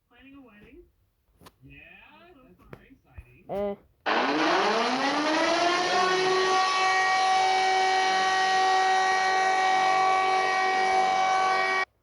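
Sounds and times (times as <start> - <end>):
emergency alert alarm: 4.1 - 11.9.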